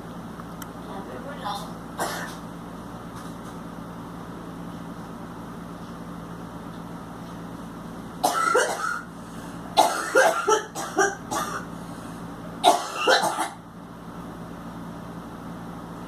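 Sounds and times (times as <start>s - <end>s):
girl coughing hard: 2.0s - 2.4s, 8.2s - 9.1s, 9.8s - 11.7s, 12.6s - 13.6s.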